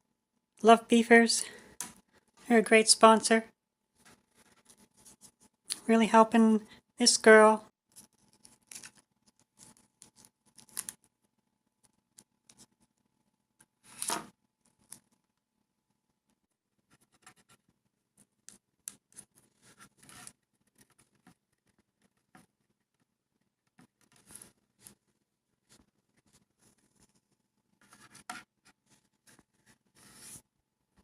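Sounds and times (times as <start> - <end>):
sticker paper rustling: 7.9 - 11.0.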